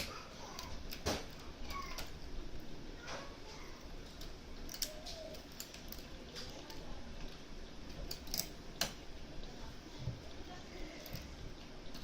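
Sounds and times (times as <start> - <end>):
lock-picking tools clicking in lock: 8.1 - 8.9.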